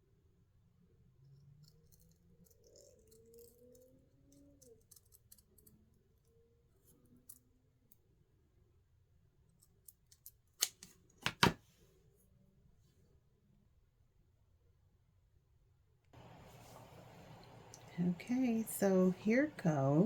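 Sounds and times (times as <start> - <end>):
handling noises of crafting work: 1.0 - 8.4, 9.1 - 13.3, 16.2 - 20.0.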